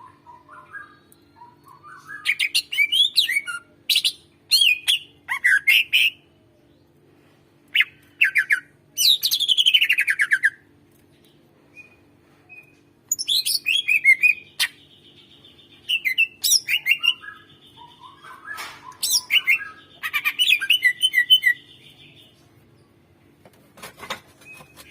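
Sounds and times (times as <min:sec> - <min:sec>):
bird singing whistled chattering notes: 0:12.6 - 0:22.2.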